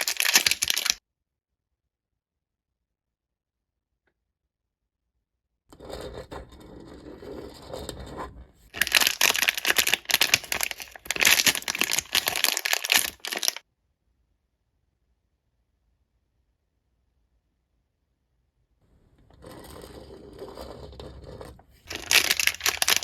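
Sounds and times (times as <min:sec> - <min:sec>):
packaging crinkling and tearing: 0:00.0 - 0:01.0, 0:08.8 - 0:13.6, 0:21.9 - 0:23.0
packaging rustling: 0:00.0 - 0:01.0, 0:08.8 - 0:13.6, 0:21.9 - 0:23.0.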